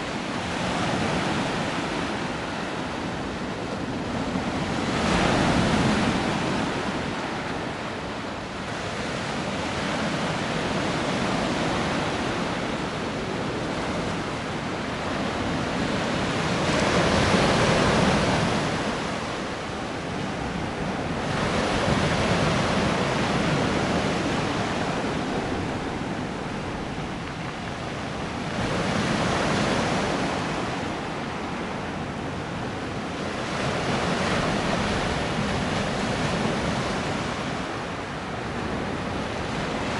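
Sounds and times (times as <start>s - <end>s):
waves breaking on shore: 0.0s - 39.9s.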